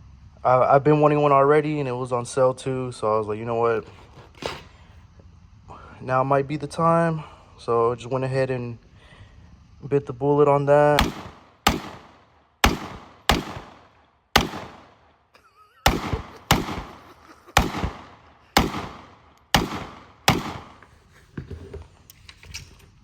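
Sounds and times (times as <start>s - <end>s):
rifle shots echoing: 10.8s - 15.2s, 15.8s - 20.9s.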